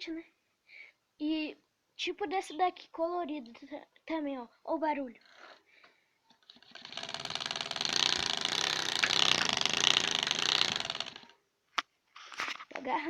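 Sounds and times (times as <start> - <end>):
card clattering in bicycle spokes: 6.5 - 11.3.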